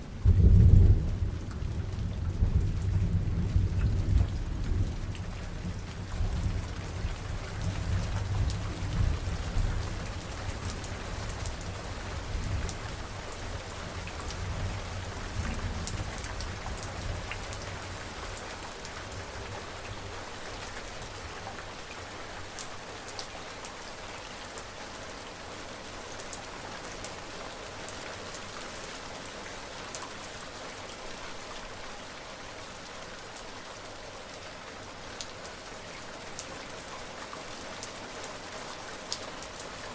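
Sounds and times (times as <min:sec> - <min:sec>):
steady rain: 0:00.0 - 0:39.9
thunder rumble: 0:00.2 - 0:06.6.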